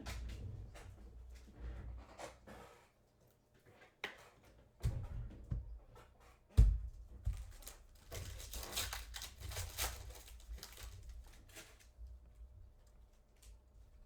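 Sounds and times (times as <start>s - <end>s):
card pack wrappers crinkling and ripping: 7.6s - 11.8s.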